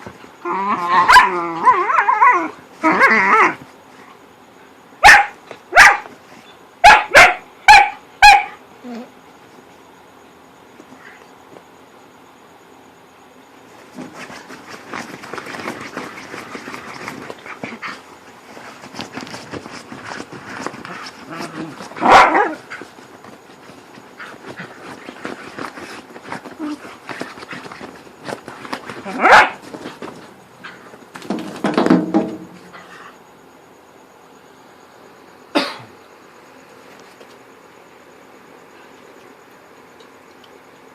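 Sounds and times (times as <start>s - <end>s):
dogs scuffling: 13.7s - 33.0s.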